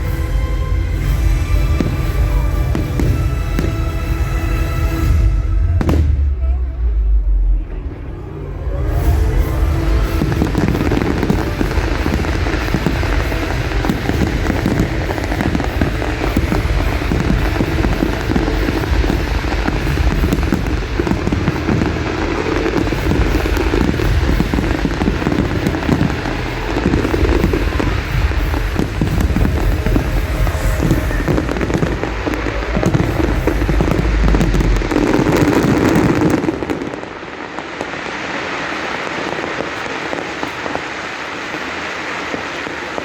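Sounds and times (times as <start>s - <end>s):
show music: 0.0s - 37.7s
fireworks banging and crackling: 0.0s - 43.0s.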